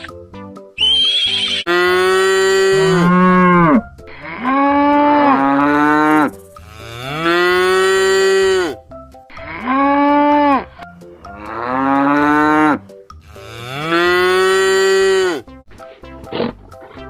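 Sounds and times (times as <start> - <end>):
cow mooing: 1.7 - 8.8, 9.4 - 10.7, 11.3 - 15.5.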